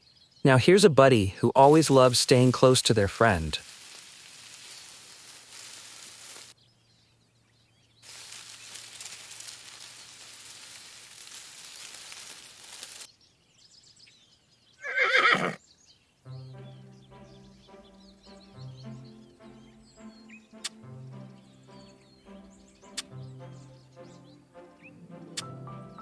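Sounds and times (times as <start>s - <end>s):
steady hiss: 1.5s - 6.6s, 8.0s - 13.1s
horse whinnying: 14.8s - 15.6s
music with held tones: 16.3s - 26.0s.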